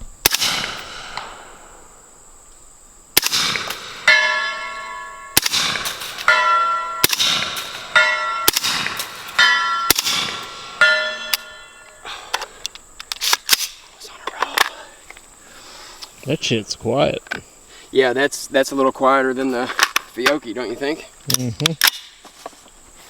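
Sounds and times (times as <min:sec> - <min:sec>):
suppressed rifle shots: 0:00.2 - 0:01.7, 0:03.2 - 0:04.7, 0:05.4 - 0:06.3, 0:07.0 - 0:11.5
steel target ringing: 0:03.2 - 0:12.0.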